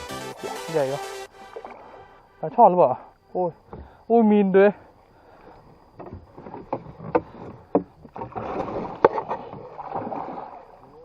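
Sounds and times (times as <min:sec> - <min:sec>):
water splashing around boat: 0:00.0 - 0:11.0
knocks against boat: 0:06.0 - 0:09.6.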